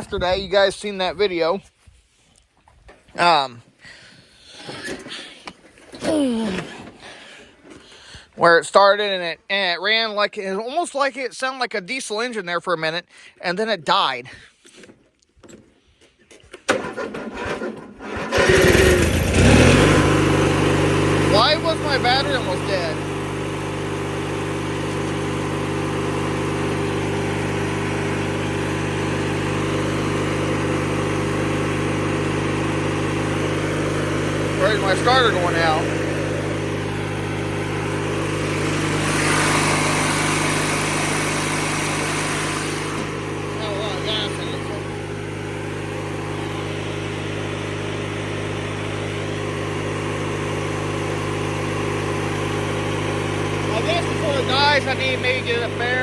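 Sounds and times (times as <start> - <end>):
riding lawnmower engine running: 16.6 - 56.0.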